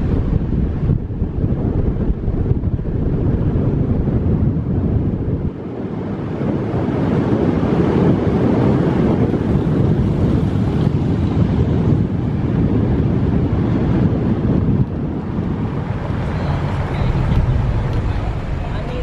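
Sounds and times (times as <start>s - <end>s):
wind on microphone: 0.0s - 19.0s
car road noise: 13.4s - 19.0s.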